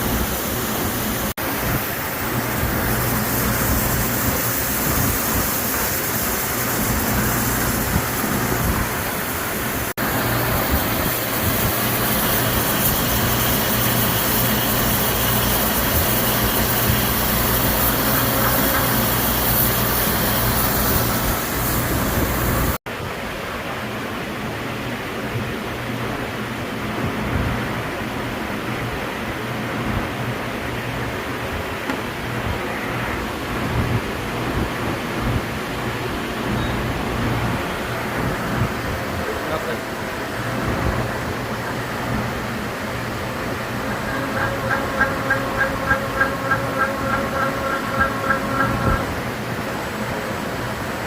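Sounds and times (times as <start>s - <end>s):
milling machine cutting: 43.6s - 49.2s.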